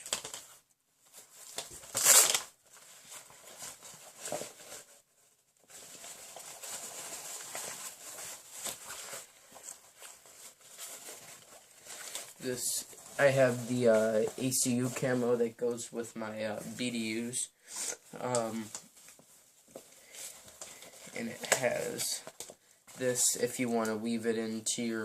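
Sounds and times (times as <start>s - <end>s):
plastic packaging crinkling: 0.0s - 15.4s, 18.1s - 24.0s
loud rip: 1.8s - 2.6s.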